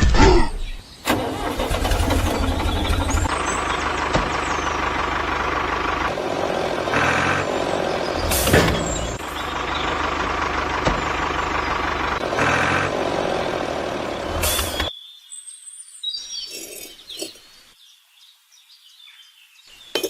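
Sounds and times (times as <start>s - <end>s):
engine revving bursts: 1.1s - 14.9s
vehicle engine running: 1.1s - 14.9s.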